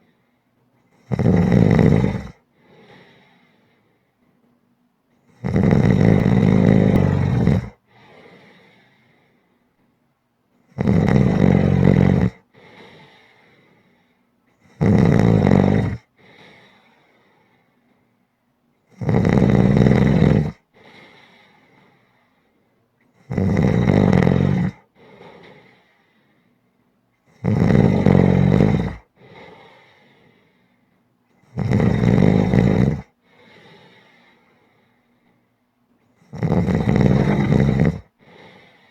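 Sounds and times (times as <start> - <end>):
person snoring: 1.0 - 3.3, 5.3 - 8.8, 10.8 - 13.4, 14.6 - 16.7, 18.9 - 21.3, 23.2 - 25.8, 27.3 - 30.3, 31.4 - 34.4, 36.2 - 38.8
soft breath out: 2.5 - 4.2, 6.2 - 9.7, 12.5 - 14.3, 16.2 - 18.2, 20.7 - 22.8, 25.0 - 26.8, 29.2 - 31.0, 33.2 - 35.6, 38.2 - 38.9.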